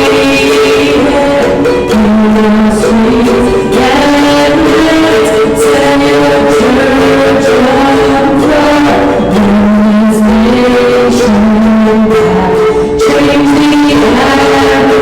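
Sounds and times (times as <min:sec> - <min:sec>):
voices singing worship song: 0:00.0 - 0:15.0.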